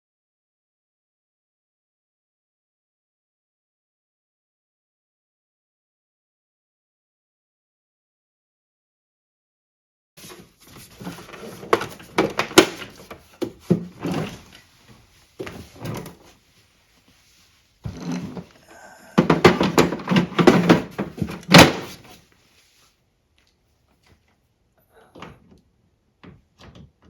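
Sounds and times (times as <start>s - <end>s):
plastic parts knocking and rattling: 10.9s - 14.6s, 19.2s - 22.1s.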